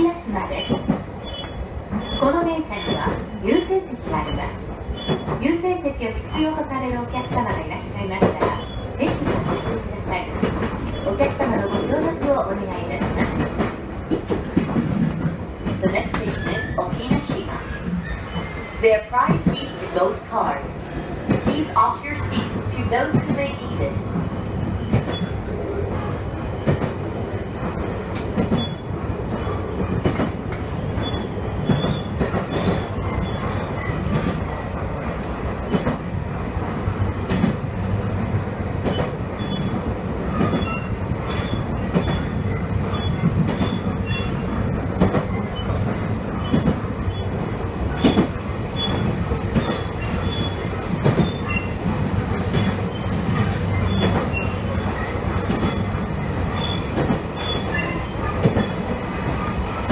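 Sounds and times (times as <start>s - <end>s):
rail clicks: 0.0s - 59.9s
train wheels rumbling on rail: 0.0s - 59.9s
wheel squeals: 17.6s - 18.8s, 40.3s - 44.4s, 47.9s - 51.9s, 52.6s - 58.9s.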